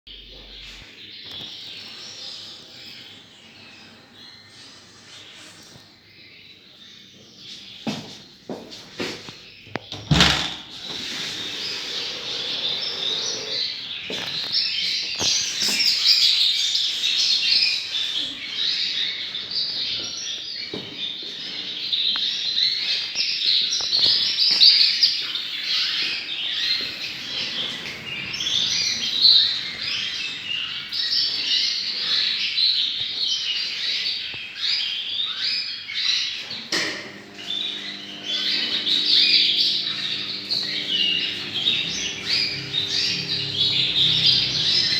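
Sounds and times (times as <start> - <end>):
canaries chirping and singing: 0.1 - 8.0, 10.8 - 44.9
low steady hum: 37.1 - 44.9.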